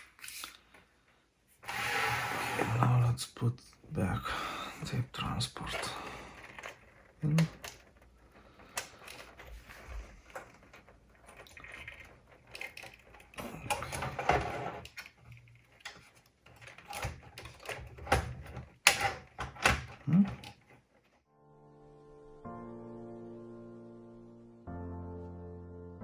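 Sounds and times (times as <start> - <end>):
tape mechanism clicks and knocks: 10.3 - 20.6.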